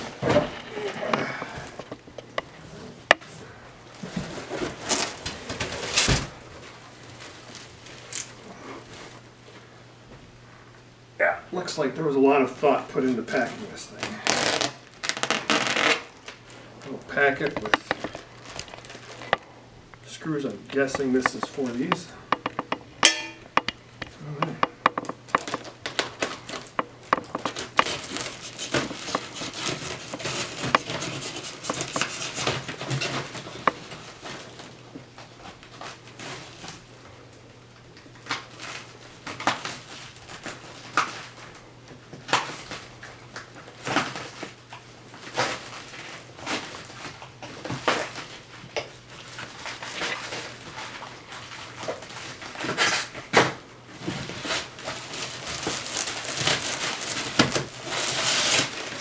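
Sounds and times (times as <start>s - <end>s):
packaging rustling: 0.0s - 3.2s, 12.5s - 36.9s, 38.2s - 41.6s, 42.2s - 59.0s
low steady hum: 0.0s - 52.6s
packaging clicks and knocks: 17.4s - 19.5s, 20.8s - 34.5s, 54.8s - 59.0s.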